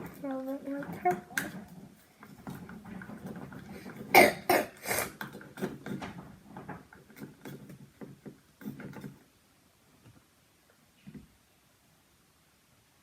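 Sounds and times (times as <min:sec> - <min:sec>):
slime stirred in a bowl: 0:00.0 - 0:09.3.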